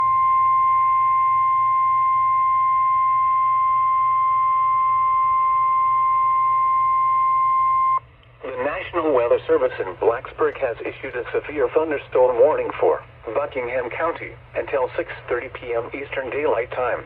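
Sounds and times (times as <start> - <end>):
steady high alarm tone: 0.0 - 8.0.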